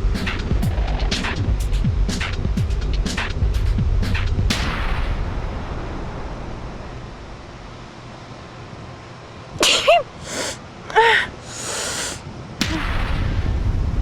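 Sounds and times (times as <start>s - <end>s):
person sneezing: 9.6s - 12.9s.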